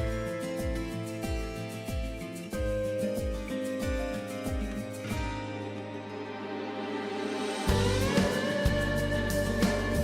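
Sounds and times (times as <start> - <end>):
calm instrumental music: 0.0 - 10.0
steady bass beat: 7.7 - 10.0.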